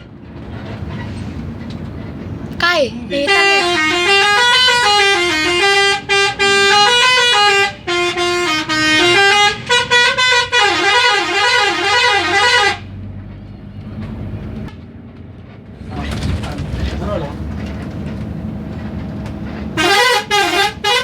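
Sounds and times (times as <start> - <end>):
bus engine rumble: 0.0 - 21.0
road noise: 0.0 - 21.0
bus musical horn playing a tune: 3.1 - 13.0, 19.7 - 21.0.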